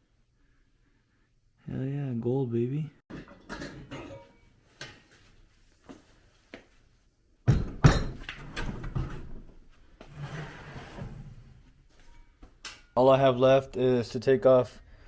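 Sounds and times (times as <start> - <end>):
rummaging and scraping tools: 3.1 - 5.2.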